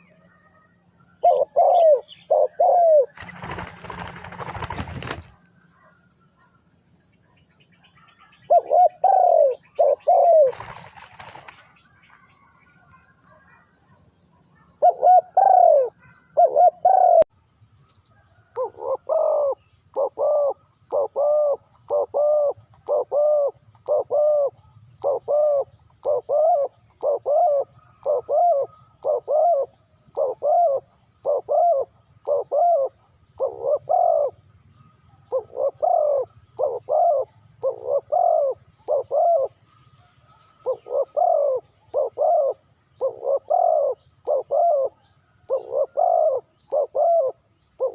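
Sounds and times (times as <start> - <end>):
dove cooing: 1.2 - 6.0, 8.0 - 11.7, 14.6 - 17.3, 18.4 - 34.4, 35.2 - 47.9.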